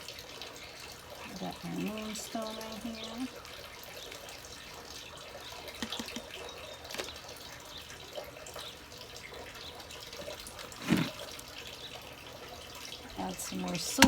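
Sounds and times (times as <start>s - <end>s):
soil rustling and crumbling: 10.2s - 11.5s
scrape: 10.8s - 11.2s.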